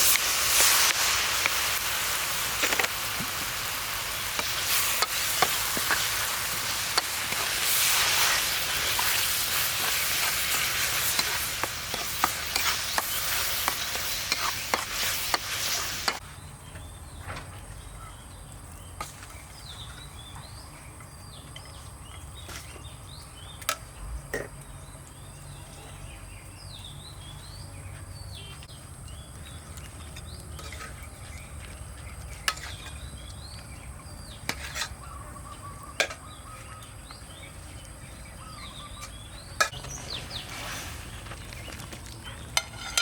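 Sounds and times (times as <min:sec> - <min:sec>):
food sizzling in hot oil: 0:00.0 - 0:16.2, 0:39.4 - 0:43.0
birds chirping: 0:00.0 - 0:43.0.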